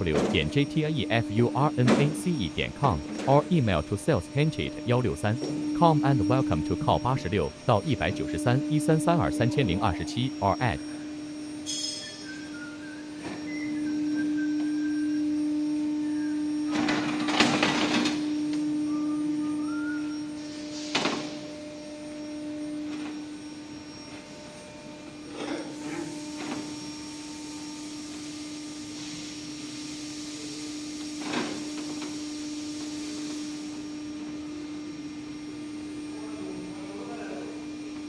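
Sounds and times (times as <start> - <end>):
electric machine hum: 0.0 - 38.0.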